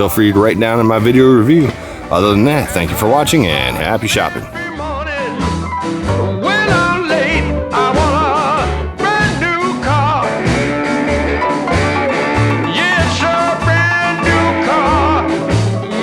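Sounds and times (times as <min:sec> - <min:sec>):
song with singing and instruments: 0:01.6 - 0:16.0.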